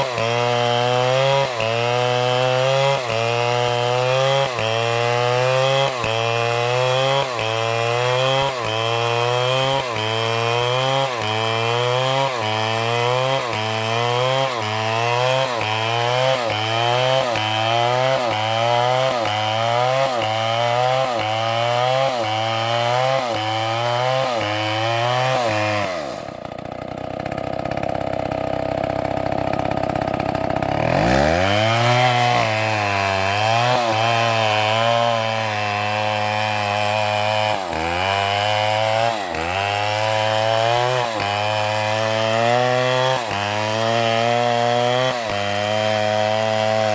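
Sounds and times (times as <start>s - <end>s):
chainsaw cutting wood: 0.0s - 46.9s.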